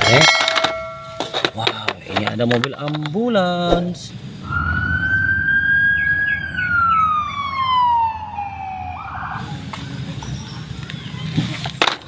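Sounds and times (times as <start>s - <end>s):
toy siren wailing: 4.4s - 9.6s.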